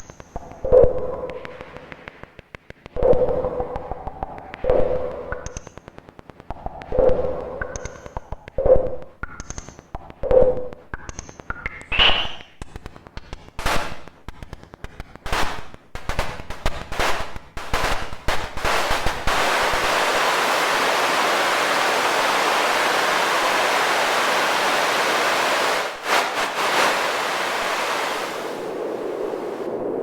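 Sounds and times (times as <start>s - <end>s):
speaker crackle: 13.6s - 30.0s
rushing noise surges: 15.3s - 30.0s.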